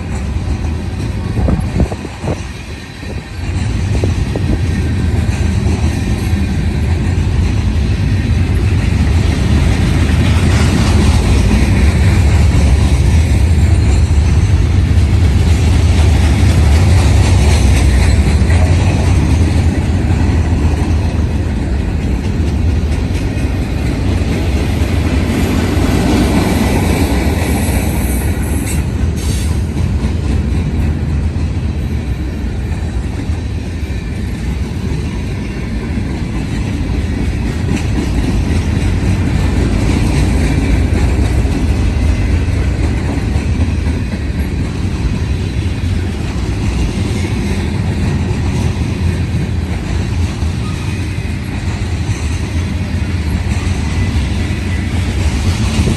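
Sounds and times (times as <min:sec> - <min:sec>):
freight train wheels rumbling: 0:00.0 - 0:55.9.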